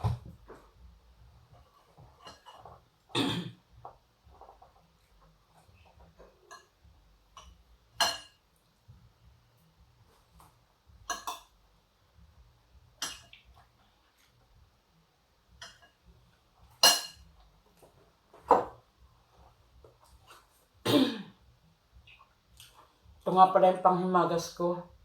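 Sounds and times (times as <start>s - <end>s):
cutlery clinking on a plate: 1.8s - 3.3s, 6.4s - 6.8s, 7.4s - 8.4s, 11.1s - 11.5s, 13.0s - 13.4s, 15.6s - 16.0s, 16.7s - 17.3s.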